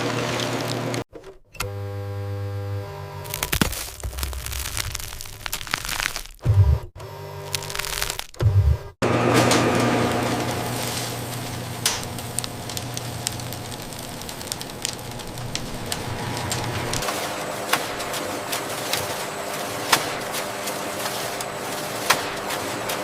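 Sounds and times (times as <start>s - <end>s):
machinery hum: 6.4s - 23.0s
machinery clicks and clatters: 9.3s - 23.0s.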